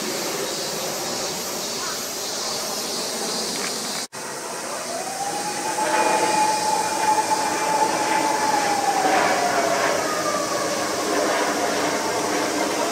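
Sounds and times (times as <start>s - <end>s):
jet airliner passing overhead: 0.0s - 12.9s.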